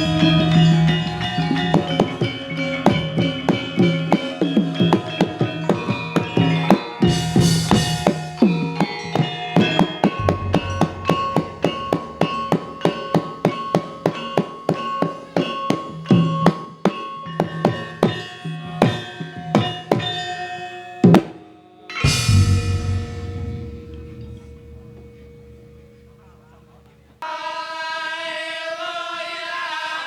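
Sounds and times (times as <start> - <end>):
metal keyed instruments struck: 0.0 - 15.2, 21.1 - 27.2
gamelan ensemble playing: 0.0 - 27.2
kendang drum strokes: 7.0 - 14.2, 22.0 - 26.6
deep gong stroke ringing: 10.2 - 12.5, 22.0 - 27.2.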